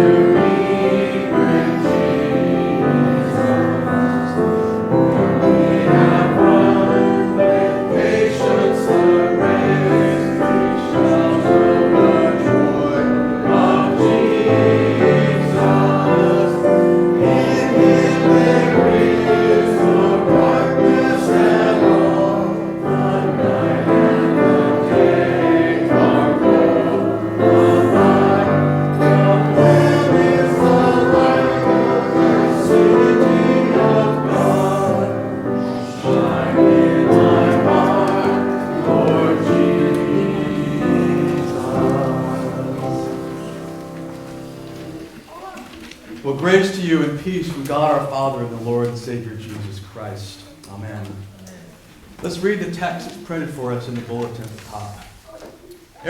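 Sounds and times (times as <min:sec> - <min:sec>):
group singing worship song: 0:00.0 - 0:45.3
instrumental accompaniment: 0:00.0 - 0:45.8.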